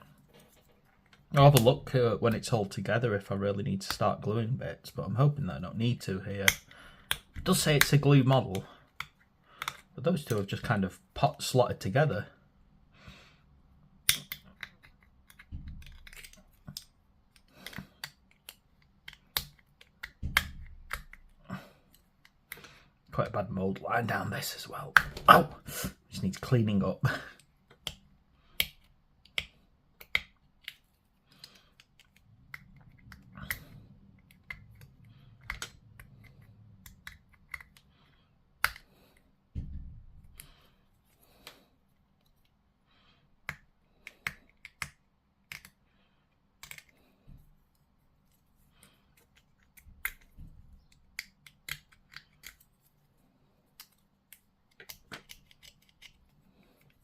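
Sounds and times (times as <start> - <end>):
plastic parts clicking and snapping: 6.4 - 10.5, 14.0 - 22.7, 27.4 - 40.7, 43.4 - 53.0, 53.7 - 57.0.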